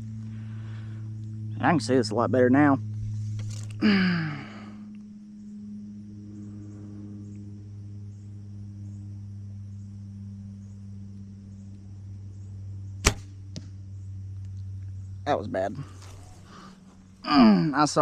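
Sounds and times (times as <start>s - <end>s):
insect chirping: 0.0s - 18.0s
steady low hum: 0.0s - 18.0s
bow shot crack: 13.0s - 13.8s.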